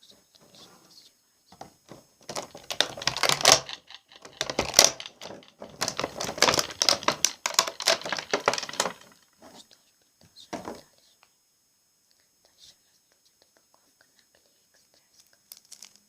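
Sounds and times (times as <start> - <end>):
close crackling and crinkling: 1.5 - 9.6, 15.2 - 16.0.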